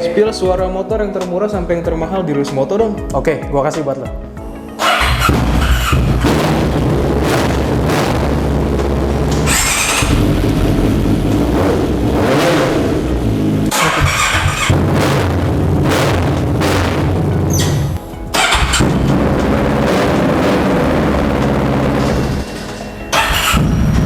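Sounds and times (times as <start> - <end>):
motorcycle engines revving: 4.8 - 24.0.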